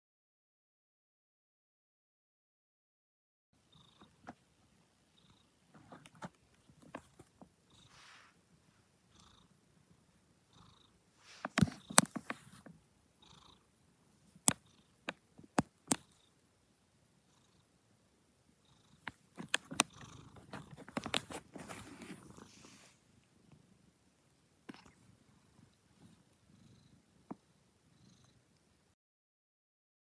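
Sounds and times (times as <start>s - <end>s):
cat purring: 3.6s - 16.4s, 17.2s - 17.8s, 18.6s - 23.9s, 24.6s - 28.7s.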